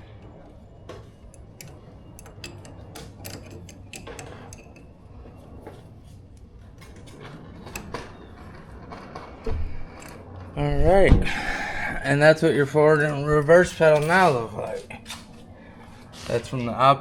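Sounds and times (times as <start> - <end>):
hand tools clicking and tapping: 0.9 - 4.9.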